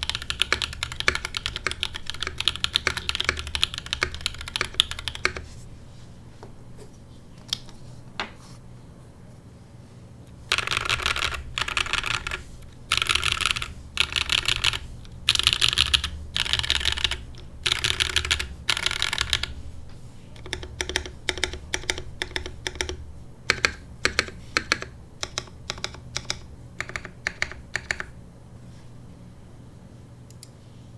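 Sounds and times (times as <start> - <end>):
mechanical keyboard typing: 0.0 - 5.5, 10.5 - 19.5, 20.4 - 28.2.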